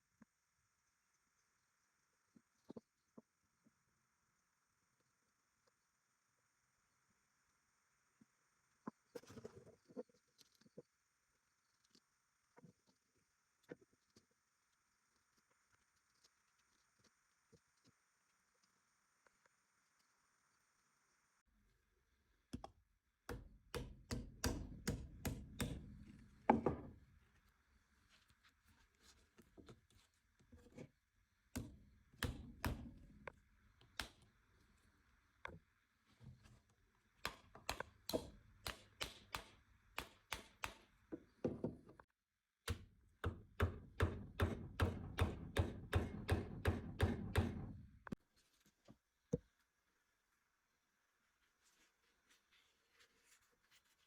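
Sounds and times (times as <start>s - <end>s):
hammer tapping: 23.3s - 27.0s, 31.5s - 34.2s, 37.2s - 41.8s, 42.7s - 47.8s.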